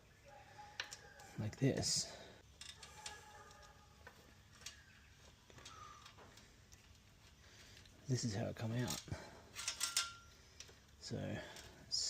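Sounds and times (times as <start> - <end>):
metal chain clicking and rattling: 2.4 - 4.9, 8.6 - 12.0.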